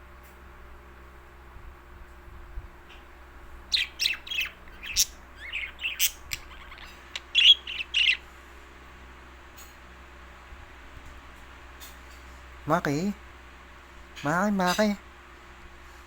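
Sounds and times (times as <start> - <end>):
pet bird chirping and squawking: 3.7 - 8.3.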